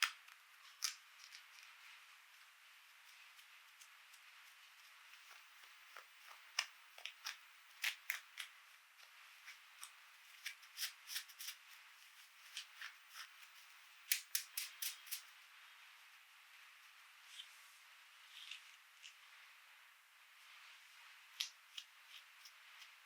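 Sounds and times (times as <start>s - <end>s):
plastic toy parts clicking: 14.1s - 15.3s.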